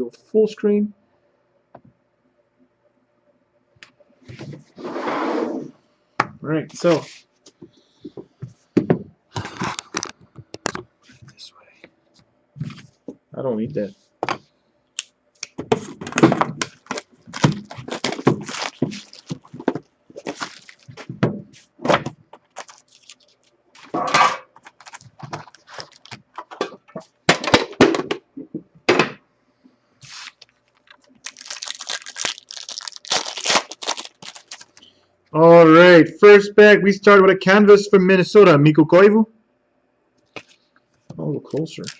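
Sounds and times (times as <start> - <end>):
foil wrapper crinkling and tearing: 16.6 - 21.1, 22.4 - 24.0, 24.6 - 26.5, 30.0 - 34.9, 41.5 - 41.9.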